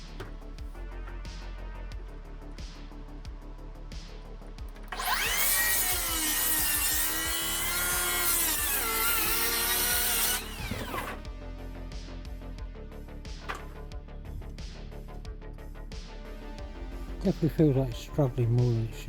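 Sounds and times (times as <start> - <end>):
background music: 0.0 - 19.0
circular saw cutting board: 4.9 - 11.3.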